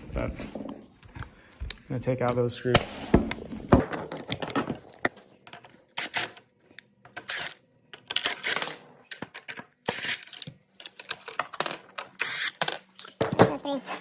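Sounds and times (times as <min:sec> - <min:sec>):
screwdriver scraping screws: 0:07.2 - 0:07.6, 0:09.9 - 0:10.5, 0:12.2 - 0:12.6.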